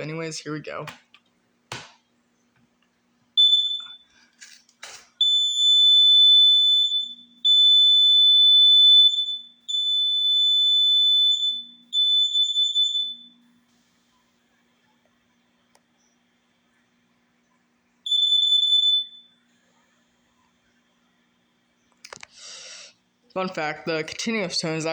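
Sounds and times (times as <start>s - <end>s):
detector beep: 3.4s - 4.1s
high-pitched alarm tones: 3.4s - 4.1s, 5.2s - 13.4s, 18.1s - 19.3s.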